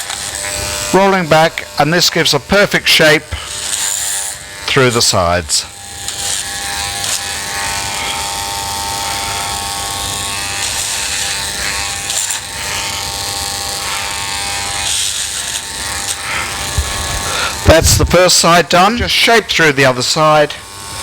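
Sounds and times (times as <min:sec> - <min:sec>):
electric hair clippers buzzing: 0:00.0 - 0:21.0.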